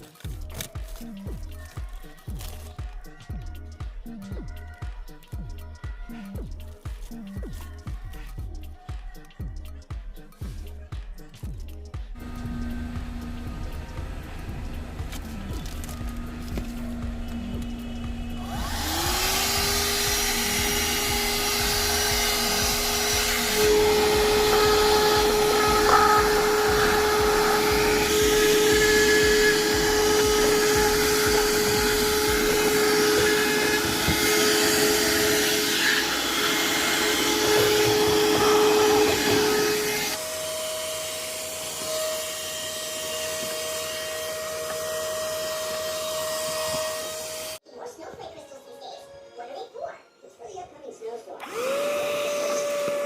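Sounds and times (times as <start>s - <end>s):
vacuum cleaner motor whine: 12.2s - 47.6s, 51.4s - 53.0s.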